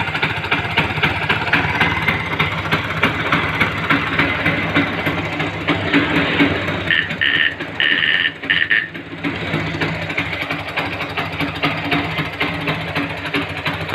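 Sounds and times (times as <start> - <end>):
motorcycle engine idling: 0.0 - 13.9
short high beeps: 6.9 - 8.9.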